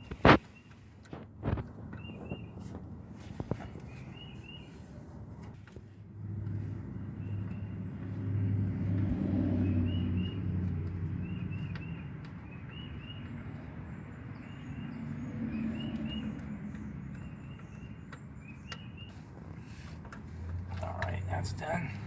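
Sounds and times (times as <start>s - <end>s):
vehicle engine hum: 0.0s - 22.0s
small bird chirping: 3.5s - 4.9s, 11.1s - 19.9s.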